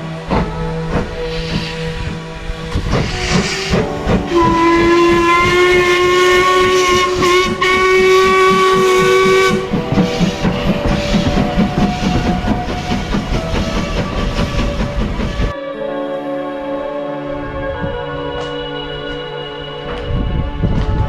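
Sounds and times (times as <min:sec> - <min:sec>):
steam engine chuffing: 0:00.4 - 0:15.5
steam locomotive whistle: 0:01.2 - 0:15.6.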